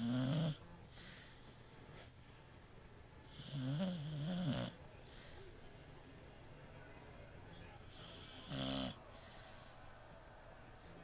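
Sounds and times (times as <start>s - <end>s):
dog snoring: 0.0s - 0.6s, 3.3s - 4.8s, 7.9s - 9.0s
quiet breath: 0.0s - 2.6s, 4.8s - 6.0s, 7.7s - 10.6s.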